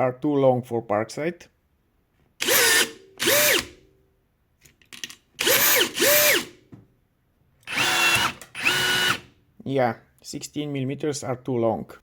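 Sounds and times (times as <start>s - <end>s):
rivet gun motor whirring: 2.4s - 3.7s, 5.4s - 6.6s, 7.7s - 9.3s.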